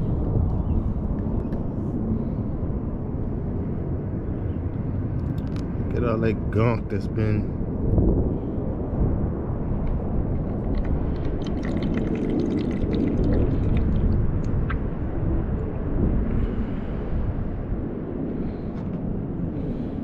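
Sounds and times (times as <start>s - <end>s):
low rumble: 0.0s - 6.5s, 7.2s - 20.0s
small clicks and ticks: 9.8s - 14.8s
oily sludge pouring and dripping: 10.3s - 14.7s.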